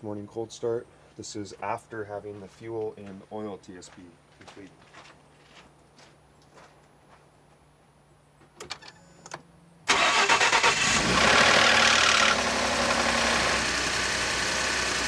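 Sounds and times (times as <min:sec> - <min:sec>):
starter cranking engine: 0:09.9 - 0:13.9.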